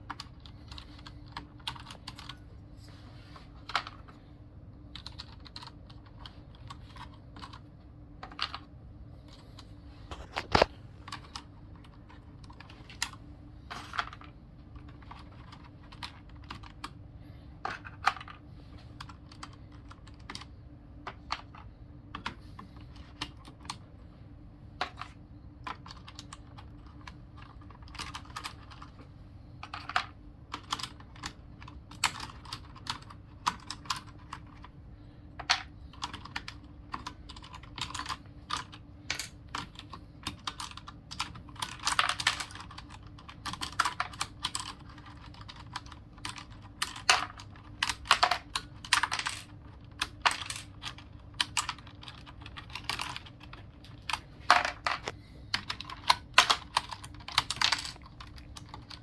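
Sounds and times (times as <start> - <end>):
faint steady hum: 0.0 - 59.0
keyboard keys clicking: 4.9 - 7.6, 14.8 - 17.0, 24.8 - 28.9, 35.5 - 59.0.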